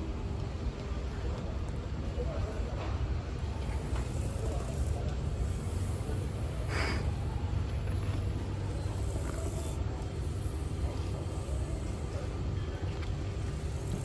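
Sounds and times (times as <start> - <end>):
cat snoring: 3.9 - 7.2, 8.9 - 12.4, 13.5 - 14.0.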